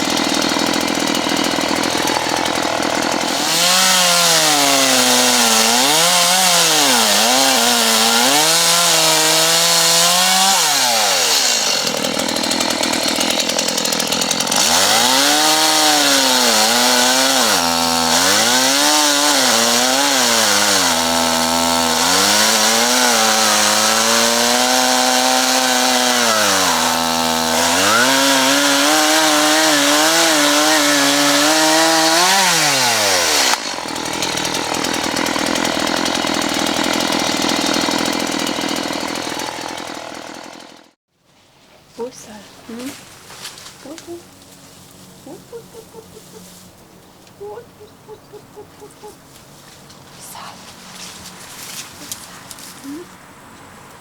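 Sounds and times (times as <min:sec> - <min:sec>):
chainsaw cutting wood: 0:00.0 - 0:41.0.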